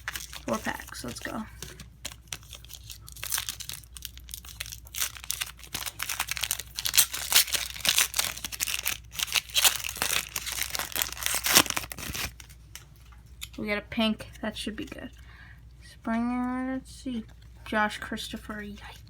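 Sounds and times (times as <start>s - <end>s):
card wrappers tearing and crinkling: 0.0s - 12.9s.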